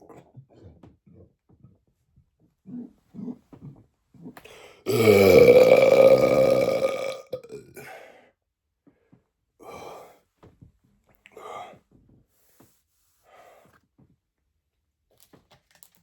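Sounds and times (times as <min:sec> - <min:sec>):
man belching loudly: 0:04.9 - 0:07.9.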